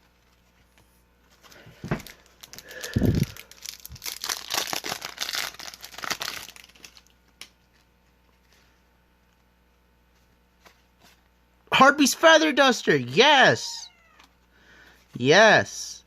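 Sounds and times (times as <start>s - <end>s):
wrapper tearing and crinkling: 1.9s - 7.2s.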